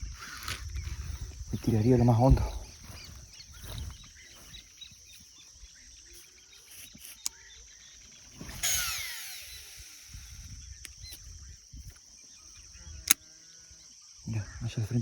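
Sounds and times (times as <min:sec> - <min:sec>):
fishing reel whirring: 0:00.0 - 0:01.9, 0:06.1 - 0:12.0.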